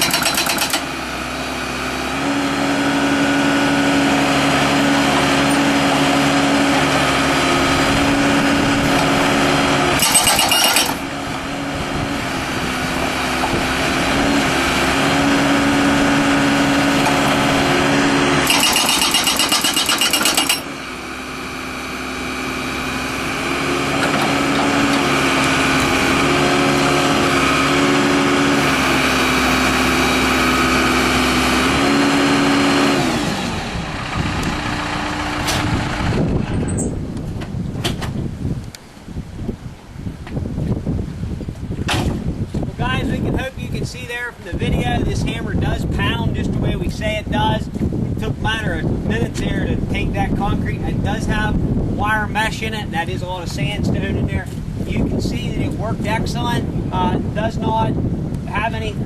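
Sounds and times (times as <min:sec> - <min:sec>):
hydraulic hammer breaking concrete: 0:00.0 - 0:01.0, 0:10.0 - 0:11.0, 0:18.4 - 0:20.7
diesel engine running: 0:00.0 - 0:59.0.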